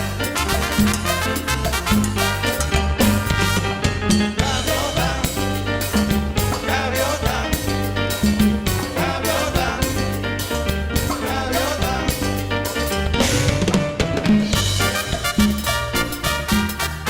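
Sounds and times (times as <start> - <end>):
latin dance music: 0.0 - 17.0
person singing: 4.4 - 5.8, 6.4 - 8.0, 8.7 - 10.2, 11.0 - 12.6.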